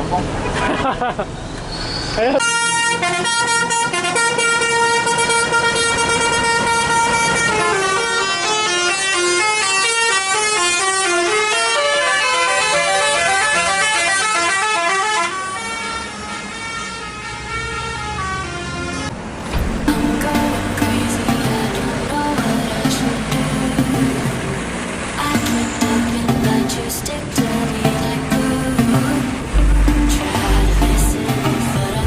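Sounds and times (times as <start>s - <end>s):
musical air horn playing: 2.4s - 15.9s.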